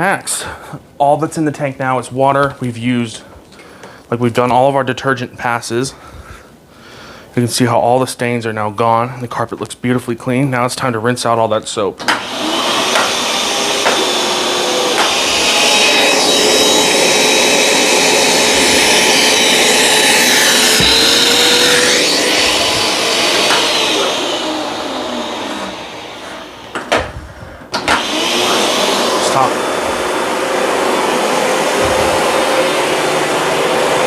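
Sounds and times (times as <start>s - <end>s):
carpet cleaner suction motor and brush: 12.1s - 26.9s, 27.8s - 34.0s
knocks: 20.6s - 21.4s.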